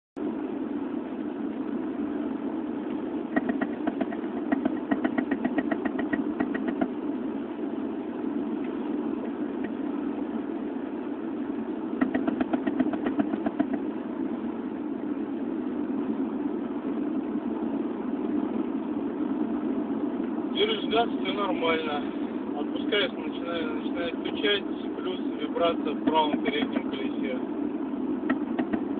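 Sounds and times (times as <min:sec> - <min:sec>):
car driving from inside cabin: 0:00.2 - 0:28.9
rapid even knocking: 0:03.3 - 0:06.9, 0:12.0 - 0:13.9, 0:28.3 - 0:28.9.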